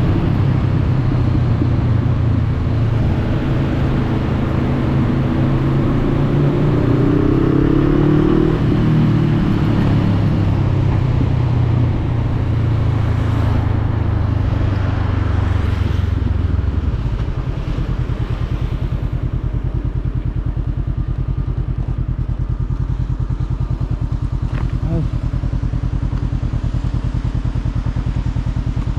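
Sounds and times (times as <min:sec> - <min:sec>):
motorcycle engine revving and idling: 0:00.0 - 0:28.9.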